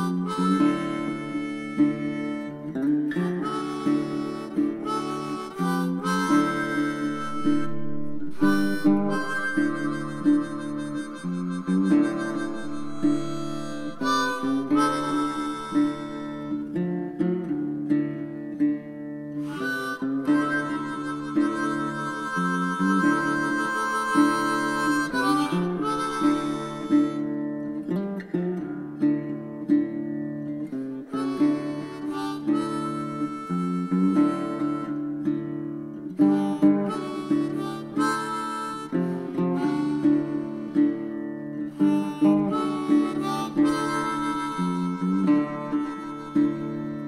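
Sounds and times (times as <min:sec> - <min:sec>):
acoustic guitar: 0:00.0 - 0:47.0
harmonica: 0:00.0 - 0:47.0.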